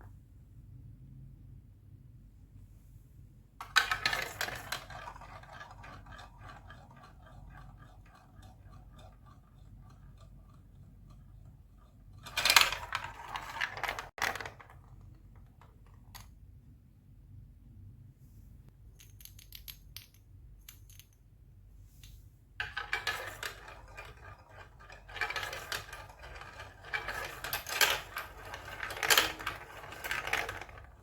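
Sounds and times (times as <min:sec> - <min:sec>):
marbles clattering on plastic track: 0:03.6 - 0:16.3, 0:22.6 - 0:31.0
rattle of rapid ticks: 0:04.1 - 0:12.6.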